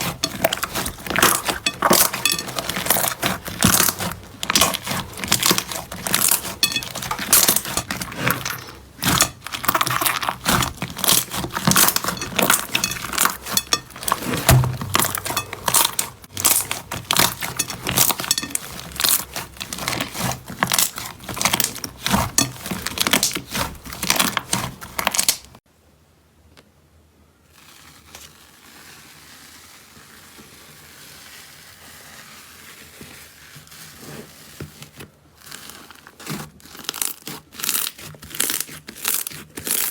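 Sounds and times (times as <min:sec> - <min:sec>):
slime crackling and popping: 0:00.0 - 0:25.6, 0:35.6 - 0:39.9.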